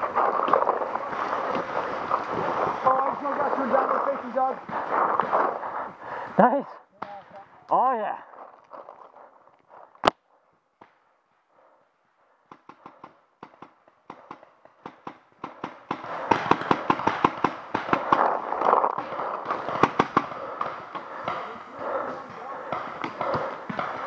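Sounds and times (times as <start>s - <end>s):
rustling haze: 0.0s - 6.4s, 7.4s - 24.0s
paintball markers firing: 12.5s - 24.0s.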